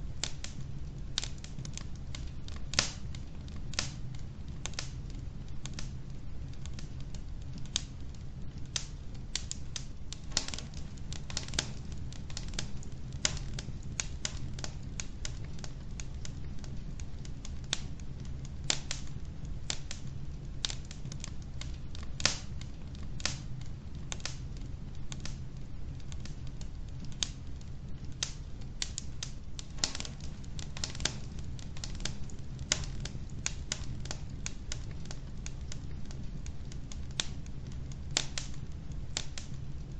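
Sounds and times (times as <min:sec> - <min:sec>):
logs crackling in fireplace: 0:00.0 - 0:39.9
low fire rumble: 0:00.0 - 0:39.9.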